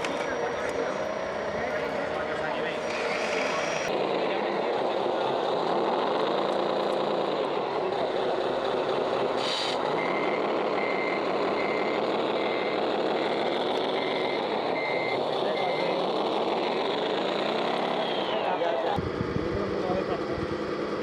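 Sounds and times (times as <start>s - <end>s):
reversing alarm beeping: 0.0s - 2.8s, 9.9s - 16.1s.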